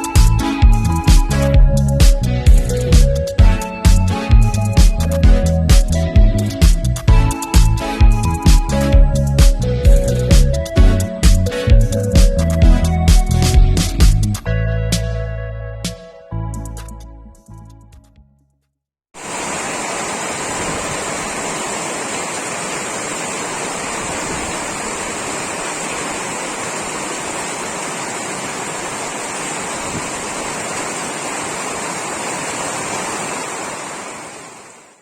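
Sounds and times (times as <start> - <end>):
heavy rain pouring: 19.2 - 35.0.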